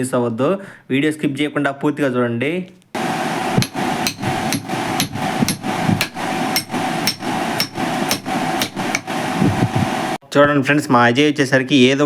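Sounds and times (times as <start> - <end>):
hammer blows on metal: 3.4 - 10.0.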